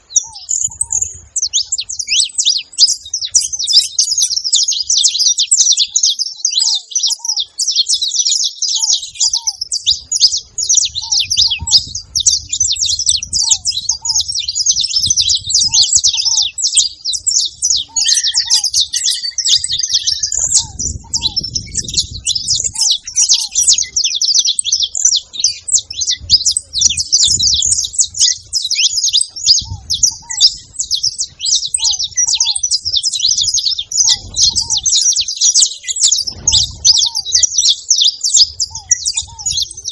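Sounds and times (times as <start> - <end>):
finches chirping and trilling: 0.0 - 39.9
short lower bird call: 14.9 - 24.2.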